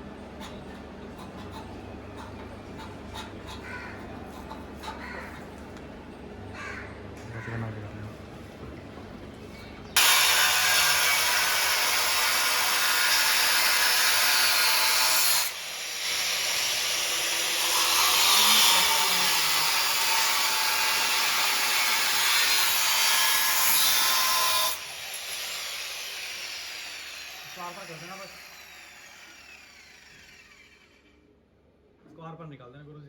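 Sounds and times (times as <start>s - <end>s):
angle grinder cutting steel: 10.0s - 31.1s.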